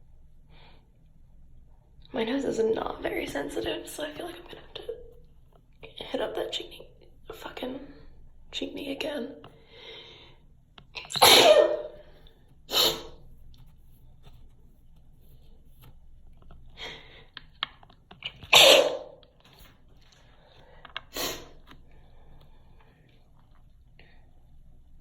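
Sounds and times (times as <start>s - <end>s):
person sneezing: 11.2s - 12.0s, 12.7s - 13.2s, 18.4s - 19.2s
sniffs: 12.7s - 13.3s, 20.9s - 22.5s.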